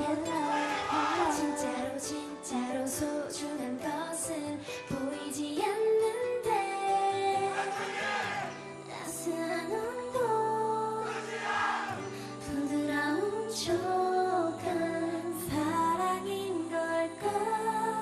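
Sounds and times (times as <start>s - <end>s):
female vocals singing: 0.0s - 18.0s
backing track: 7.4s - 8.7s.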